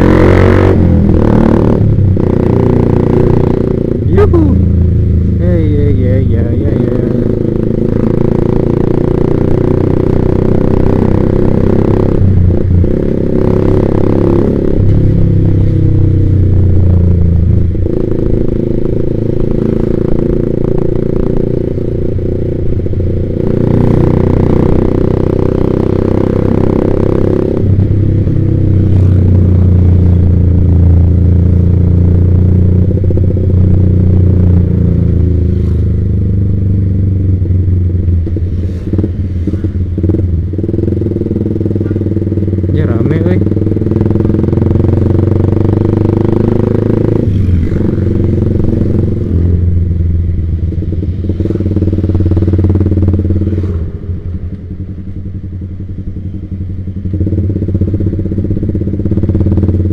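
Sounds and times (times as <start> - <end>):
motorcycle engine revving: 0.0 - 59.9.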